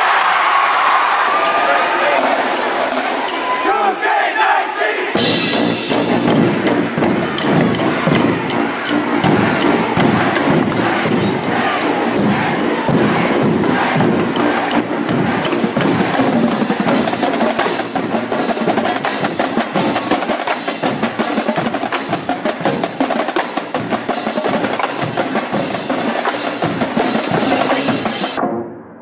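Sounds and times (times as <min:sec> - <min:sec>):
marching snare drums: 0:05.2 - 0:28.4.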